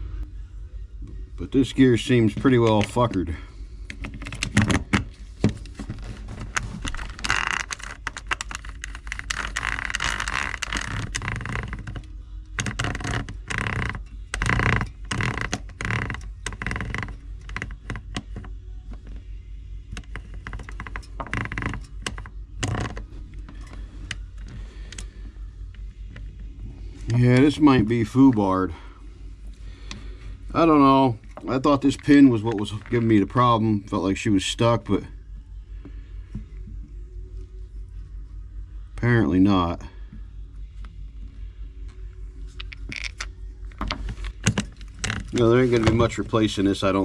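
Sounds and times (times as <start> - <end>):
faint low hum: 0.0 - 47.0
metal parts clicking and clacking: 42.6 - 46.1.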